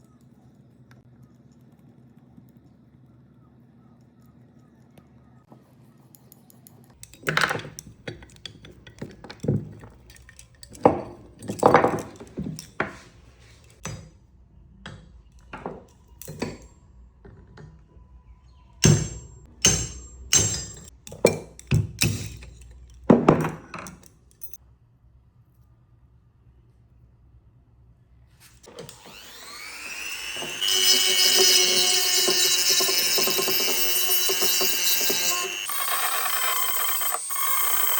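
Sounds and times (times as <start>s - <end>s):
metallic knocks and clinks: 18.8s - 24.6s.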